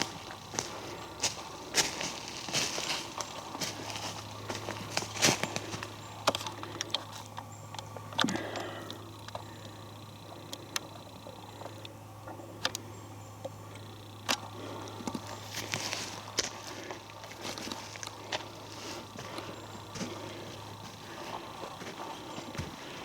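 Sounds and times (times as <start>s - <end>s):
footsteps crunching through dry leaves: 0.0s - 7.4s, 14.5s - 23.0s.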